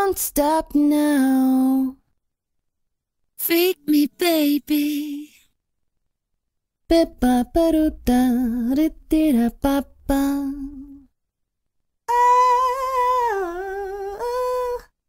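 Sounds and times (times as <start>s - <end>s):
person singing: 12.1s - 15.0s.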